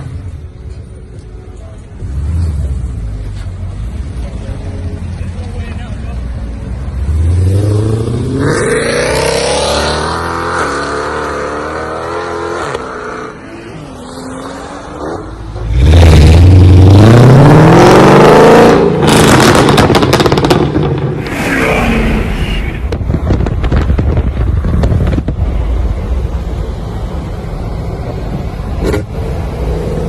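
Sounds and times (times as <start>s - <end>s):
car engine revving: 6.8s - 22.4s
exhaust crackles and pops: 19.0s - 25.7s.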